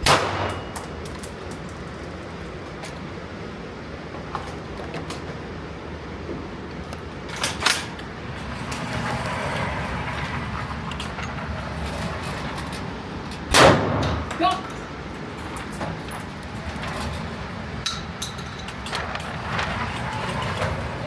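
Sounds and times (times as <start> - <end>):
gunshots: 0.0 - 0.8, 13.5 - 14.2
shooting range noise: 0.0 - 3.5, 7.0 - 21.0.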